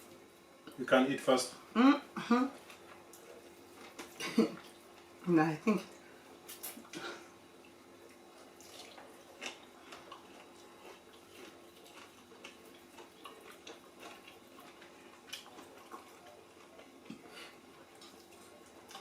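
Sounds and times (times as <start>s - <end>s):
steady low hum: 0.0s - 19.0s
people chewing: 2.2s - 5.2s, 5.8s - 19.0s.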